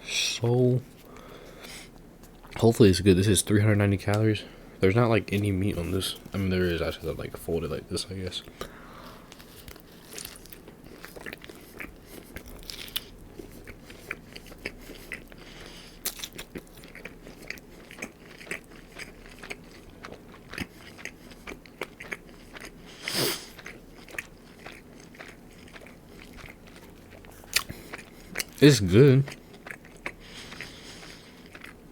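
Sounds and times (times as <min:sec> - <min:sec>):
crunchy chewing: 0:08.4 - 0:31.9.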